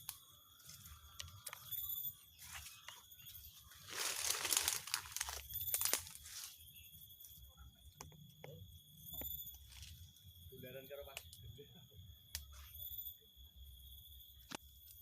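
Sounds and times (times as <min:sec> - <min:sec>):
rustling and crunching: 0:02.3 - 0:06.6.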